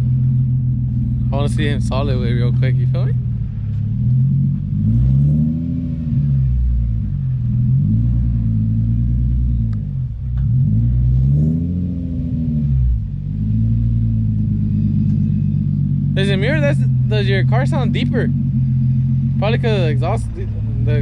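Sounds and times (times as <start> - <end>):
car engine revving: 0.0 - 21.0.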